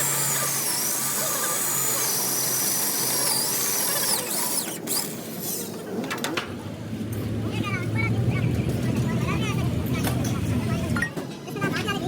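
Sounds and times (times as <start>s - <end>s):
power tool whine: 0.0s - 5.8s.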